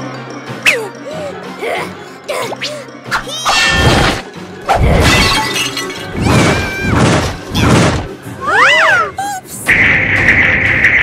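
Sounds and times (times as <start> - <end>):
background music: 0.0 - 11.0
glass shattering: 5.0 - 7.3.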